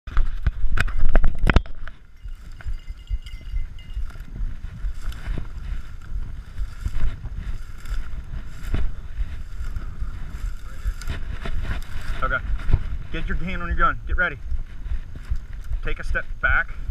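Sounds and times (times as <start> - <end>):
handling knocks and crackles: 0.1 - 13.2
wind buffeting microphone: 0.1 - 16.9.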